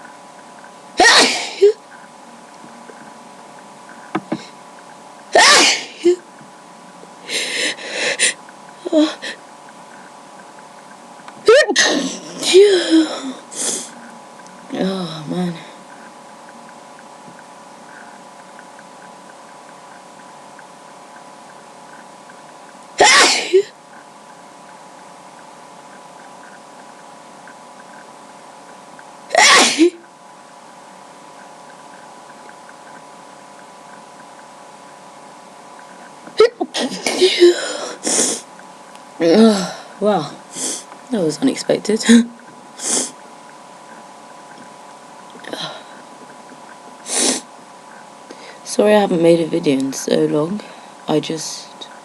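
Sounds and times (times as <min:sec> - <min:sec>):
loud human sneeze: 0:01.0 - 0:01.8, 0:05.4 - 0:06.1, 0:23.0 - 0:23.7, 0:29.3 - 0:30.0
person sneezing: 0:01.0 - 0:01.8, 0:05.4 - 0:06.2, 0:11.5 - 0:13.9, 0:23.0 - 0:23.7, 0:29.3 - 0:30.0, 0:36.4 - 0:38.4.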